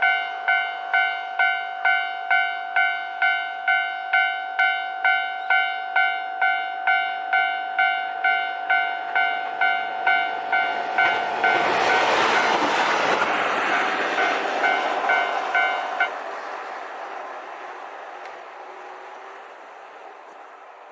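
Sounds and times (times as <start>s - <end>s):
level crossing alarm bell: 0.0s - 12.6s, 14.2s - 16.1s
railcar engine and wheel noise: 0.0s - 20.9s.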